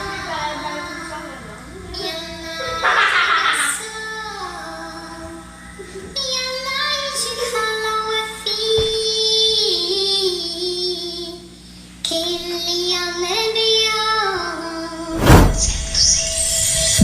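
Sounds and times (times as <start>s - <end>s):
high singing voice over loud speakers: 0.0s - 11.5s.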